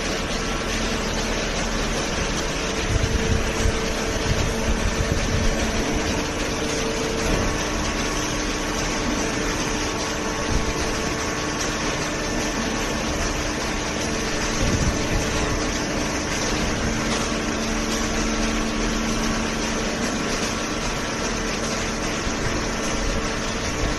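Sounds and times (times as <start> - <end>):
baler machine hum: 0.0 - 23.9.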